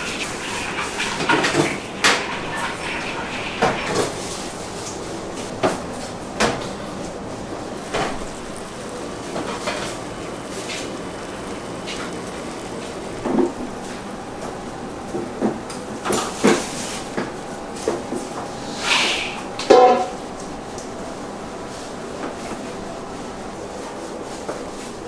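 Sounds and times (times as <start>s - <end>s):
steady background noise: 0.0s - 25.0s.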